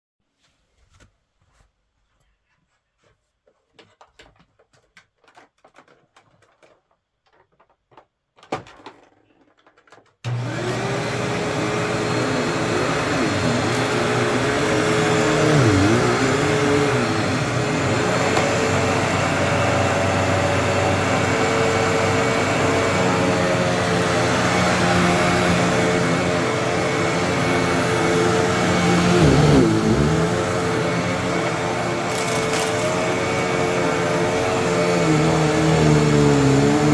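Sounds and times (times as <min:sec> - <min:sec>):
faint clicks and handling noises: 0:02.9 - 0:10.3
vacuum cleaner running: 0:10.3 - 0:36.9.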